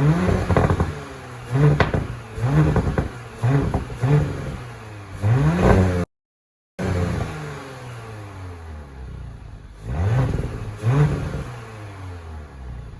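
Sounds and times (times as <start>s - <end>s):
car engine idling: 0.0s - 5.4s, 8.6s - 10.9s
car engine revving: 0.0s - 6.1s, 6.8s - 12.9s.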